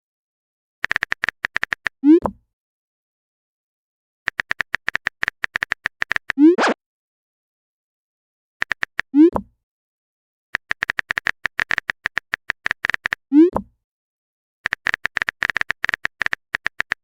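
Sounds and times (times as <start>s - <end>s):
phone keyboard typing clicks: 0.8s - 1.9s, 4.3s - 6.4s, 8.6s - 9.4s, 10.6s - 13.2s, 14.6s - 17.0s.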